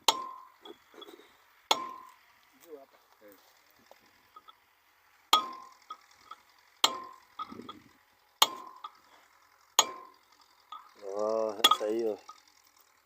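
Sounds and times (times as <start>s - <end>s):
hammer striking steel: 0.0s - 2.2s, 5.3s - 7.7s, 8.4s - 9.1s, 9.8s - 12.2s
light metal clinks: 4.3s - 4.6s, 5.4s - 13.0s.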